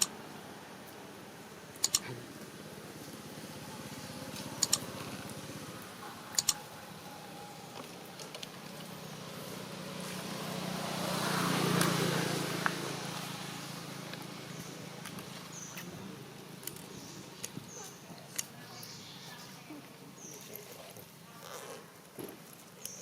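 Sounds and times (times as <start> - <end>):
sharp double clicks: 1.8 - 2.1, 4.6 - 4.8, 6.3 - 6.6
vehicle passing by: 1.9 - 16.4.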